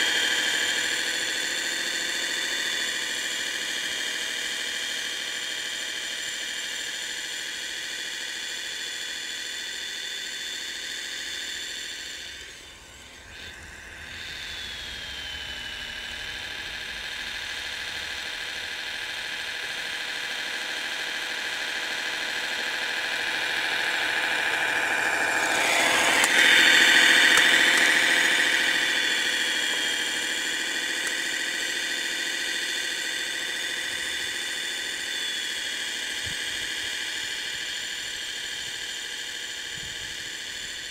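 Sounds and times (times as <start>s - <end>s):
electric drive whine: 0.0s - 40.9s
synthetic engine sound: 11.4s - 40.9s.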